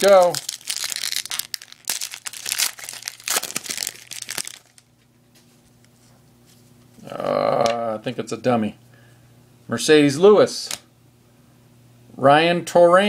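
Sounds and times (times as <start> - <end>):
wrapper tearing and crinkling: 0.0 - 4.9.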